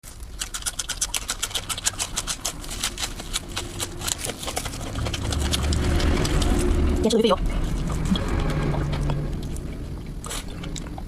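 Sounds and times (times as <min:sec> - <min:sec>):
crunchy chewing: 0:00.0 - 0:11.0
low rumble: 0:02.3 - 0:11.0.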